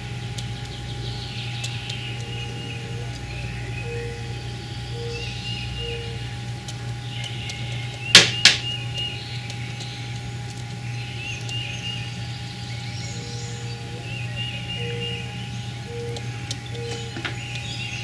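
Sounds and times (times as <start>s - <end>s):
woodpecker knocking on log: 8.2s - 8.7s.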